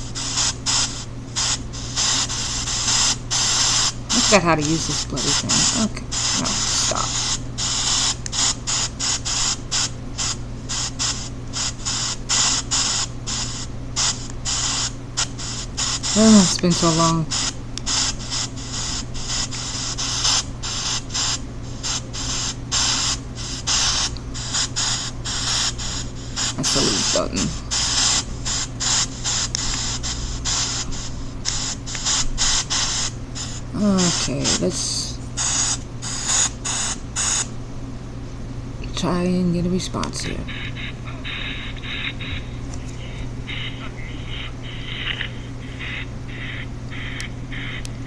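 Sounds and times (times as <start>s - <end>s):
chopped pink noise: 0.0s - 37.5s
short hissing noise bursts: 0.0s - 37.5s, 40.5s - 42.6s, 43.5s - 47.8s
steady low hum: 0.0s - 48.0s.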